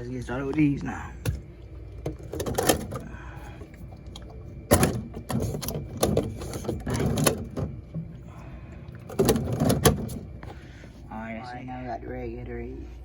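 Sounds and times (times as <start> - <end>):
plastic bottles knocking and rattling: 0.5 - 8.2, 9.0 - 10.6.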